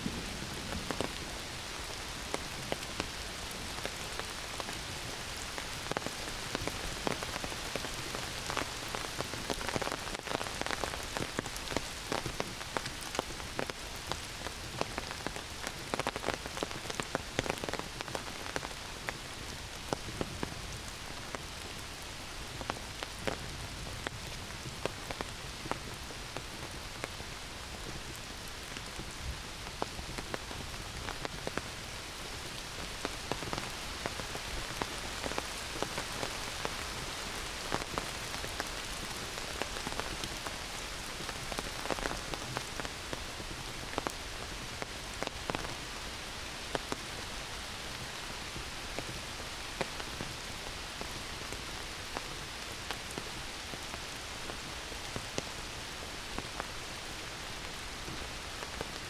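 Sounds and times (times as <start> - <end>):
close raindrop hits: 0.0 - 21.9
heavy rain on leaves: 0.0 - 59.0.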